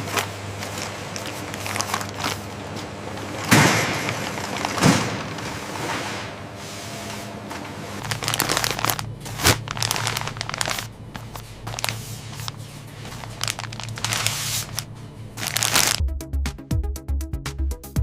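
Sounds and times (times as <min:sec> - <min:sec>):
packaging crinkling: 0:00.0 - 0:05.6, 0:08.0 - 0:16.0
low hum: 0:07.8 - 0:16.0.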